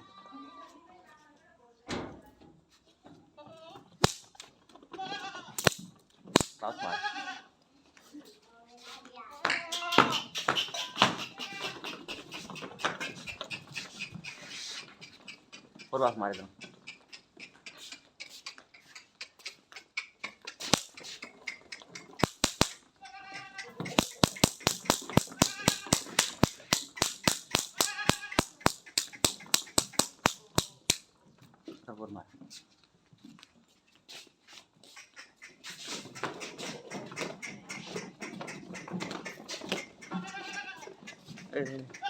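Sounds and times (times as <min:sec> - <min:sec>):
sharp cracks: 0:04.0 - 0:04.4, 0:05.6 - 0:06.6, 0:20.5 - 0:22.9, 0:23.8 - 0:31.1
irregular clicks and knocks: 0:05.6 - 0:06.6, 0:20.2 - 0:22.8, 0:23.7 - 0:31.0
goats calling: 0:09.5 - 0:31.0, 0:34.8 - 0:42.0.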